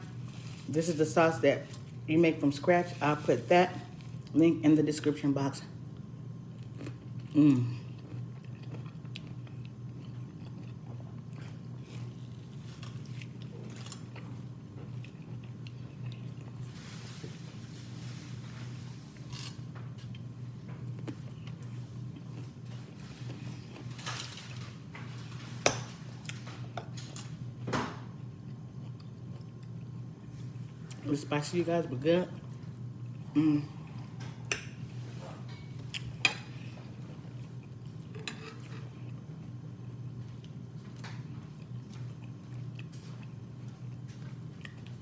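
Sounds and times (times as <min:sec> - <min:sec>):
steady low hum: 0:00.0 - 0:45.0
person chewing food: 0:06.6 - 0:16.6, 0:28.2 - 0:30.1, 0:35.8 - 0:45.0
person humming mmm: 0:07.3 - 0:07.9, 0:33.3 - 0:33.9.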